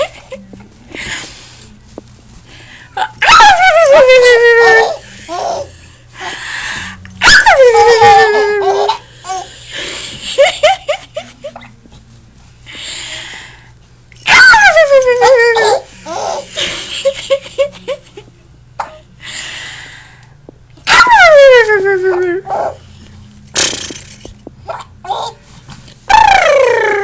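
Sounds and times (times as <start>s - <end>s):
baby laughing: 7.2s - 9.5s, 14.3s - 17.9s.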